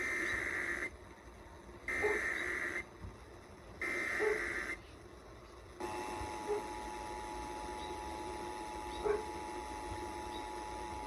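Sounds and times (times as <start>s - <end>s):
digital data tone bursts: 0.0s - 0.9s.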